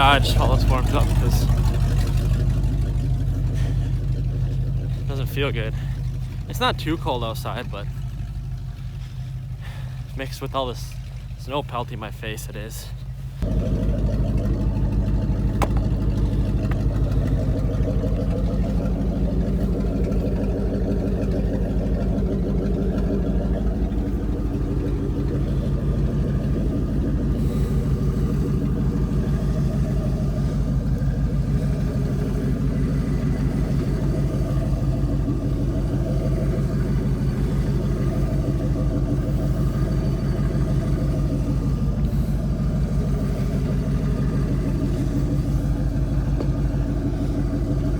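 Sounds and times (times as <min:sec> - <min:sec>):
truck engine running: 0:00.0 - 0:47.9.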